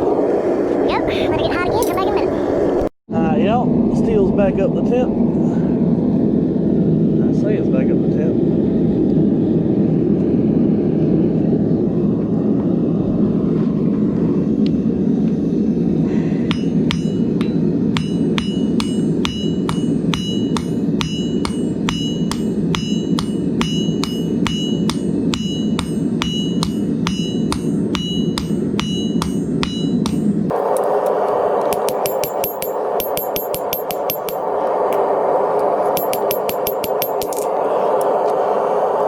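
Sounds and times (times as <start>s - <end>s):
gas burner roaring: 3.7s - 39.0s
hammer striking steel on anvil: 16.5s - 30.5s, 31.7s - 35.0s, 36.0s - 37.5s.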